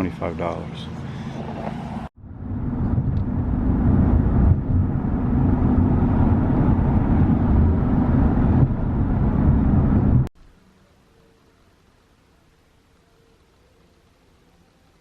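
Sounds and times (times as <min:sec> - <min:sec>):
vehicle engine and road noise: 0:00.0 - 0:10.7.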